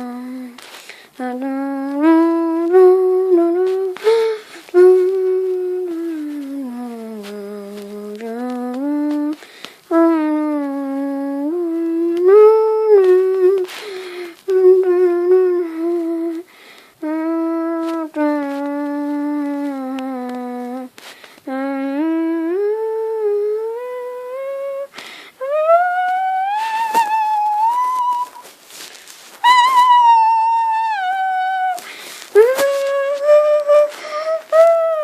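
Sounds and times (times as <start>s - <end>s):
person humming a slow melody: 0.0s - 35.0s.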